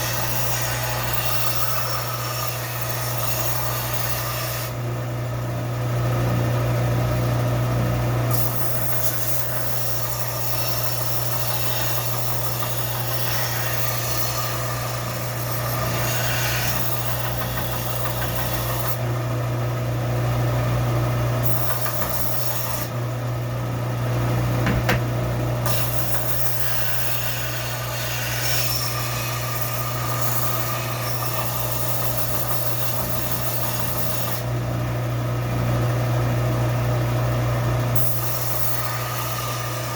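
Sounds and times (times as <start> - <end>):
blade grinding on sanding belt: 0.0 - 4.8, 8.3 - 19.1, 21.4 - 23.0, 25.7 - 34.5
belt sander motor hum: 8.3 - 19.2, 21.2 - 23.2.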